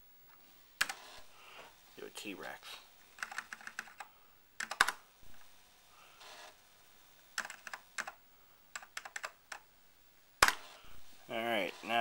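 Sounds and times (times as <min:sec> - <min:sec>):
computer keyboard keystrokes: 0:03.2 - 0:05.0, 0:07.4 - 0:09.6.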